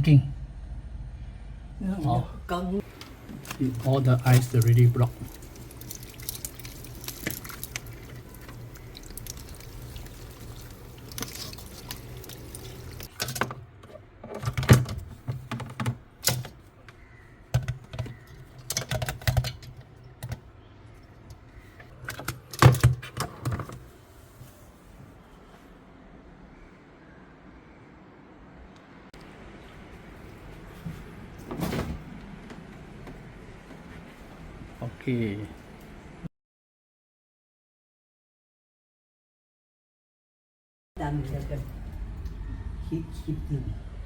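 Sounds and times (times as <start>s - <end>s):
steady low hum: 0.0s - 13.9s
clicks knocks and scraping: 11.1s - 20.4s.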